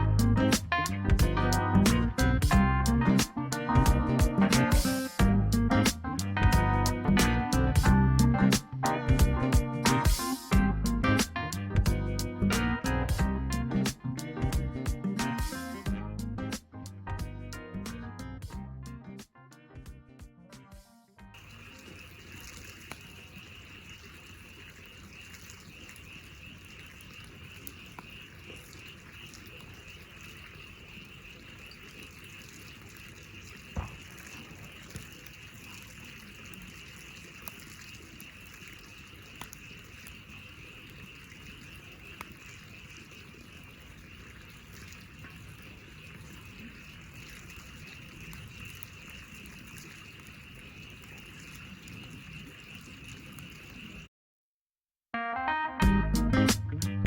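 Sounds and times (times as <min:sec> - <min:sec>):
frog chorus trilling: 0:21.4 - 0:54.1.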